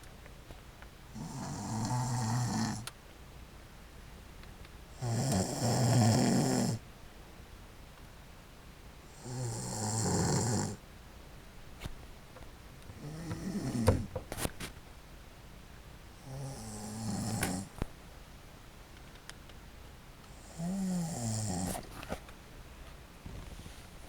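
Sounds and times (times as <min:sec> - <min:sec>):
woman snoring heavily: 0:01.2 - 0:02.9, 0:05.0 - 0:06.8, 0:09.2 - 0:10.8, 0:13.0 - 0:14.0, 0:16.2 - 0:17.7, 0:20.4 - 0:21.8.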